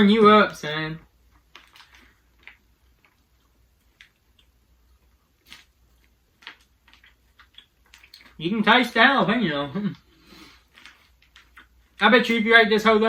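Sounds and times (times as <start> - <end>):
people chewing jerky: 1.2 - 8.4, 9.9 - 12.1.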